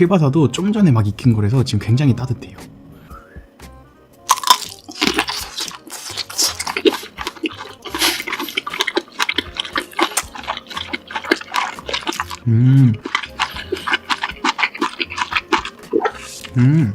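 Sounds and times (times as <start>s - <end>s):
wet chewing and mouth sounds: 4.3s - 16.9s.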